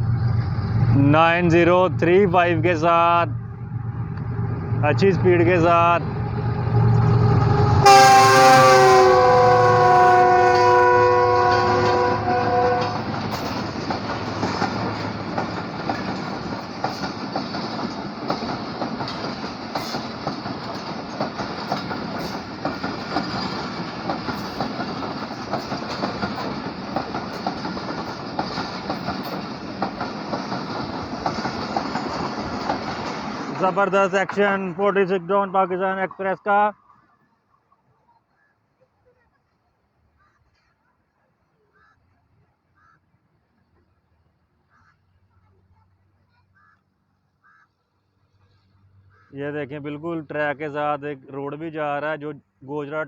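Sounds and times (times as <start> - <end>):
locomotive horn: 6.0 - 13.2
train wheels clickety-clack: 11.5 - 35.2.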